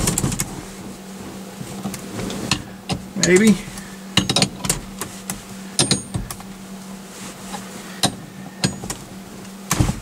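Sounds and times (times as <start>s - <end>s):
low hum: 0.0s - 10.0s
metallic clicks and knocks: 4.2s - 4.8s.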